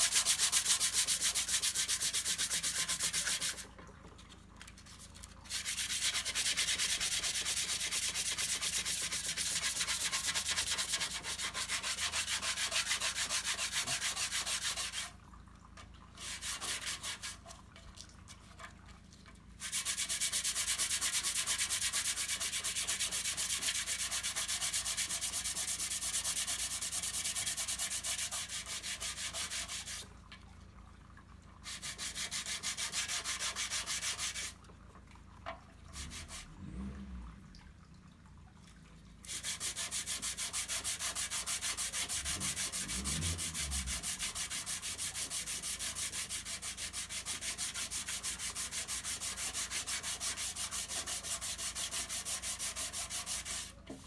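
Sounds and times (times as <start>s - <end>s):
sandpaper rasping on filler: 0.0s - 3.7s, 5.5s - 15.1s, 16.2s - 17.4s, 19.6s - 30.0s, 31.7s - 34.5s, 39.3s - 54.0s.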